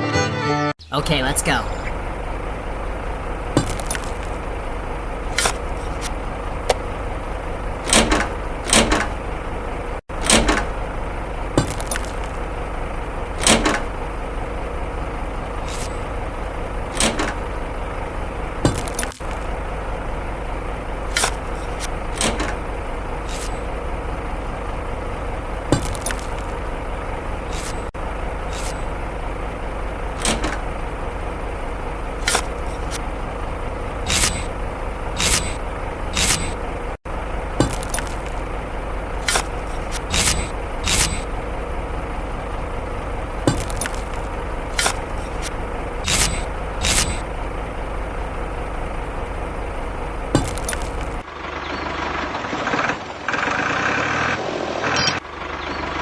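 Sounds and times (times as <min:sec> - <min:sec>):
short clicks and knocks: 0:07.8 - 0:09.2, 0:10.2 - 0:10.8, 0:13.4 - 0:13.9, 0:16.9 - 0:17.6, 0:21.1 - 0:22.6, 0:30.2 - 0:30.6.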